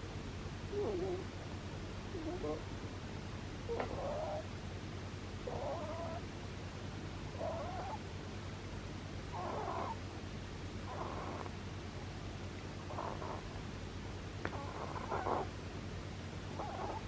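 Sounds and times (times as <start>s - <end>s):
steady low hum: 0.0s - 17.0s
rabbit snoring: 0.7s - 1.4s, 2.1s - 2.7s, 3.7s - 4.5s, 5.4s - 6.3s, 7.3s - 8.0s, 9.3s - 10.0s, 10.8s - 11.6s, 12.8s - 13.7s, 14.4s - 15.6s, 16.5s - 17.0s.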